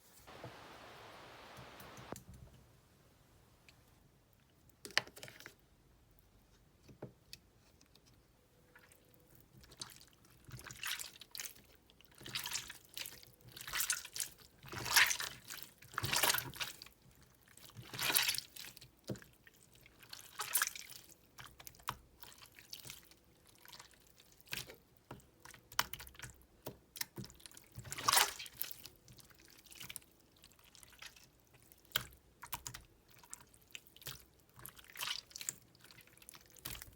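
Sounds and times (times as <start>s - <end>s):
slime squelching by hand: 8.7s - 36.9s.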